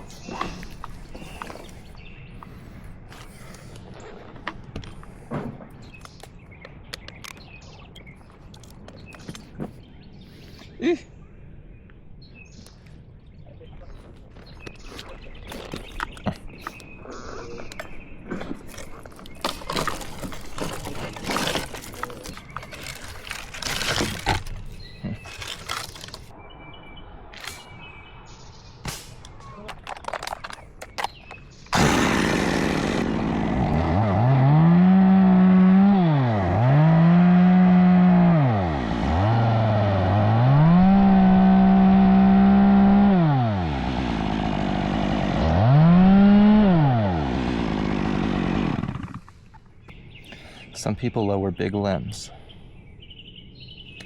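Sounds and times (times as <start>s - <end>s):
chainsaw revving and idling: 19.4s - 24.5s, 31.7s - 49.4s.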